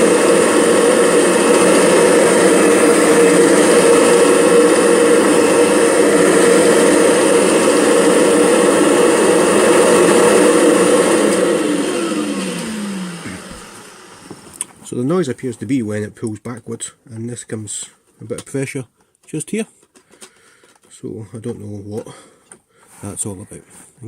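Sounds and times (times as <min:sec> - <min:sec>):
vacuum motor spinning down: 0:00.0 - 0:14.7
vacuum cleaner motor running: 0:00.0 - 0:14.8.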